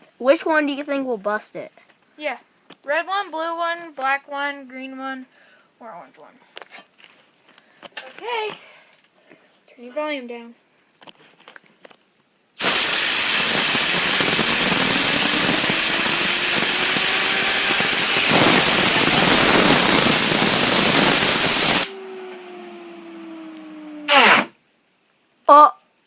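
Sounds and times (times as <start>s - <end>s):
compressed air hissing: 12.6s - 26.0s
fidget spinner whirring: 17.8s - 24.6s.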